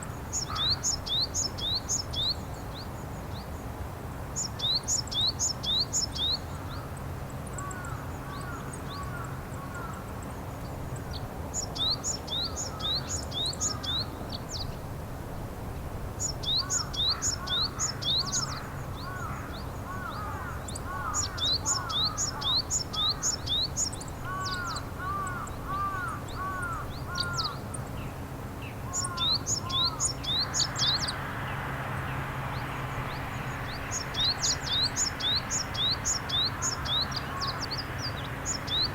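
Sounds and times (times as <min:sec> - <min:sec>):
softer lower bird calls: 0:00.0 - 0:02.8, 0:16.2 - 0:28.0, 0:28.6 - 0:38.9
steady rushing noise: 0:28.3 - 0:38.9
bird high chirping calls: 0:28.9 - 0:31.2, 0:33.1 - 0:38.9.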